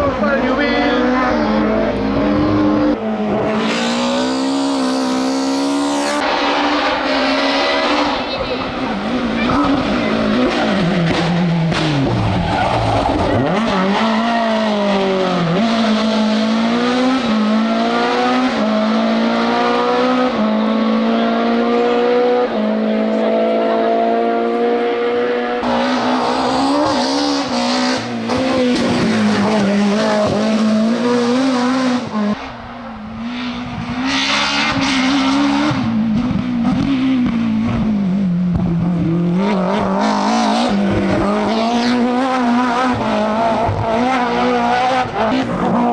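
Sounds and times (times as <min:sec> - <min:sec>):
rally car engine revving: 0:00.0 - 0:45.9.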